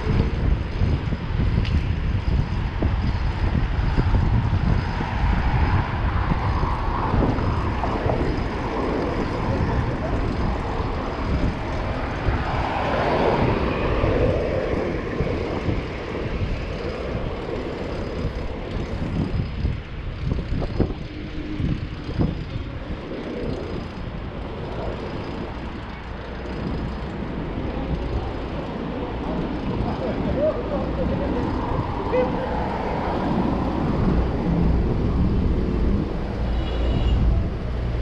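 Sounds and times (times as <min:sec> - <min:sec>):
steady low rumble: 0:00.0 - 0:38.0
vehicle passing: 0:27.1 - 0:38.0.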